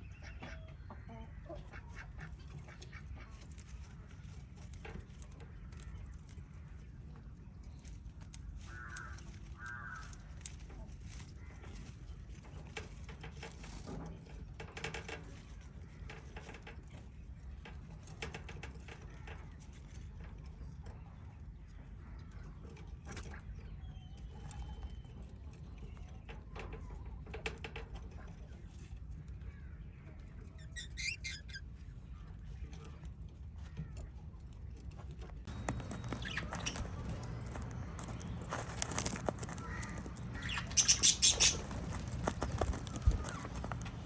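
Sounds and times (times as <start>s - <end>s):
parrots chirping: 30.6s - 31.6s, 35.5s - 44.0s.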